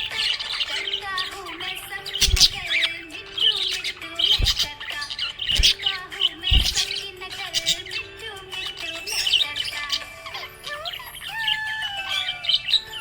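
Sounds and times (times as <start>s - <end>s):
background music: 0.0s - 13.0s
parrots chirping and squawking: 0.0s - 13.0s
low thumps: 4.3s - 4.7s.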